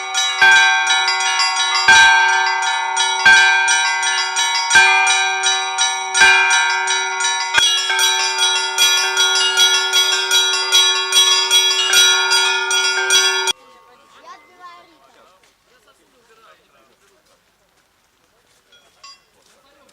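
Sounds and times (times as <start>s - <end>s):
large bell low tone: 0.0s - 15.0s
small bells striking: 0.0s - 15.3s, 18.7s - 19.4s.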